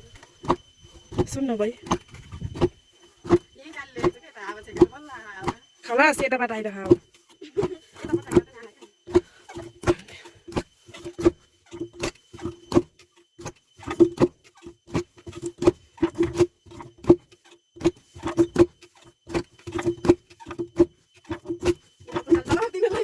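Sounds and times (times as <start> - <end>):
ringing knocks: 0.4 - 23.0.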